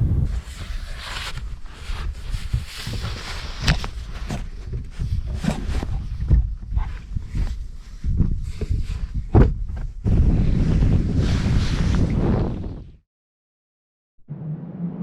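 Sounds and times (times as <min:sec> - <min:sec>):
wind buffeting microphone: 0:04.6 - 0:13.0.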